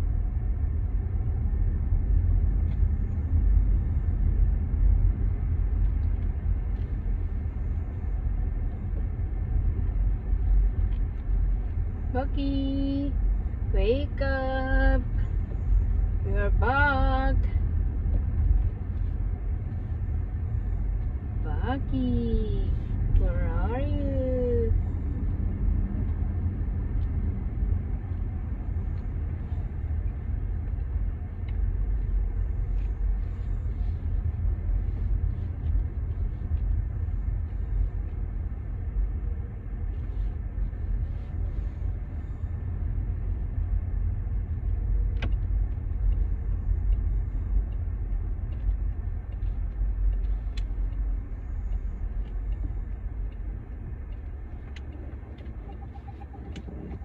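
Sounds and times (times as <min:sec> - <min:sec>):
car engine and road noise: 0:00.0 - 0:57.0
faint ticks: 0:44.5 - 0:57.0.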